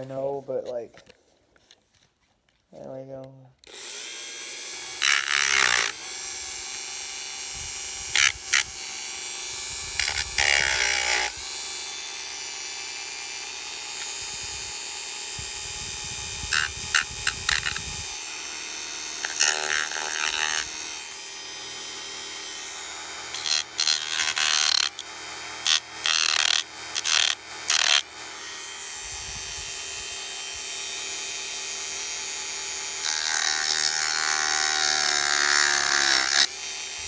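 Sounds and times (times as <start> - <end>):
rotary tool whining: 3.6 - 37.0
rough grinding on plastic: 15.5 - 29.8.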